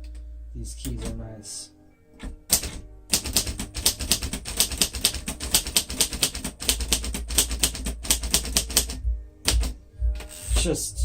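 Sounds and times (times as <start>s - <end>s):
typewriter typing fast: 2.5s - 9.7s.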